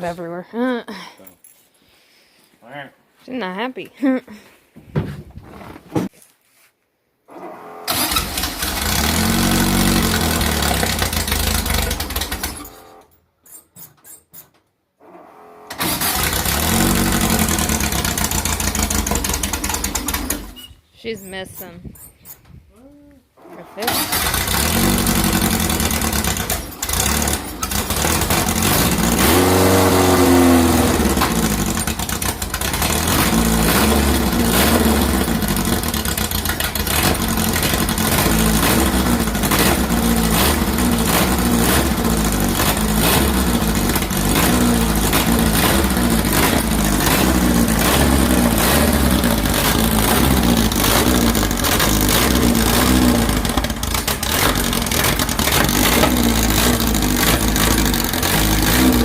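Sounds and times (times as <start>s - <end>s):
engine running rough: 7.6s - 13.0s, 15.3s - 20.6s, 23.4s - 59.0s.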